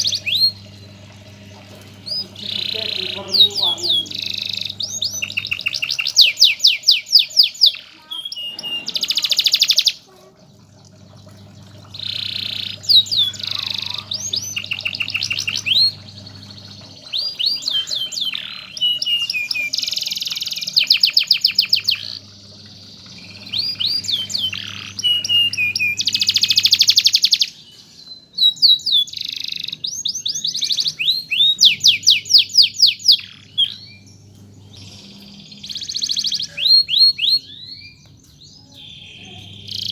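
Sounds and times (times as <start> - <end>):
canary singing trills: 0.0 - 39.9
low steady hum: 0.0 - 39.9.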